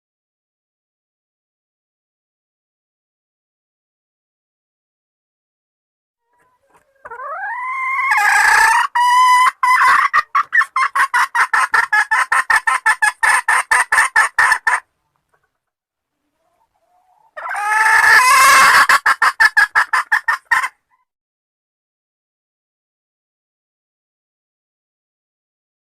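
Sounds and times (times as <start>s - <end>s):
hen clucking call: 6.2s - 14.9s, 16.3s - 21.0s.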